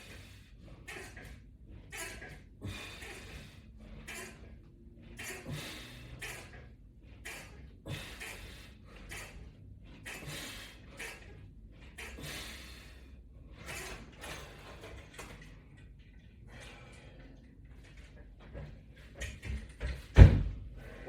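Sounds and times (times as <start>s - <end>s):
person breathing: 12.1s - 13.2s.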